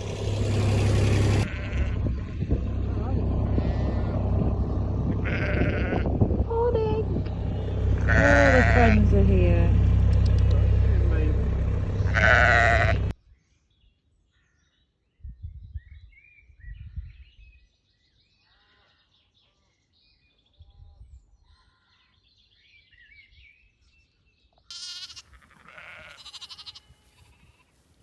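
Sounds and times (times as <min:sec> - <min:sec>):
low rumbles: 0:00.0 - 0:13.1
sheep bleating: 0:01.4 - 0:13.1, 0:24.7 - 0:27.8.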